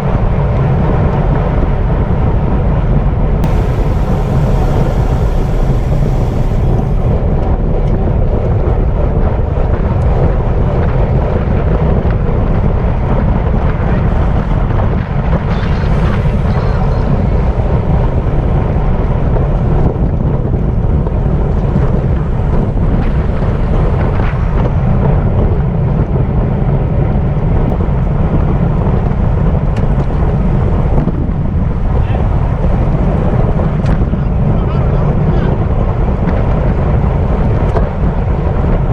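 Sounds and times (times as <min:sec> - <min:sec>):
wind rush on microphone: 0:00.0 - 0:38.9.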